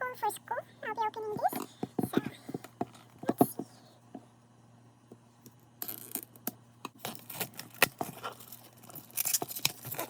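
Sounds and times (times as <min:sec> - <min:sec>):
wrapping crinkling and tearing: 0:07.0 - 0:10.0.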